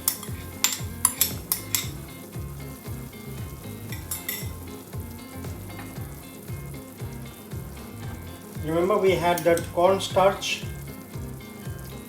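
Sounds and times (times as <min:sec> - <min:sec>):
spoon clinking against pot: 0:00.0 - 0:02.0, 0:03.9 - 0:04.8
soup bubbling: 0:00.0 - 0:12.0.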